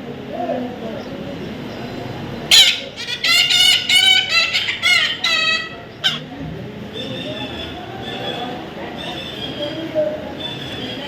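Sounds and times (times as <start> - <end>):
parrot calling: 2.4 - 9.6.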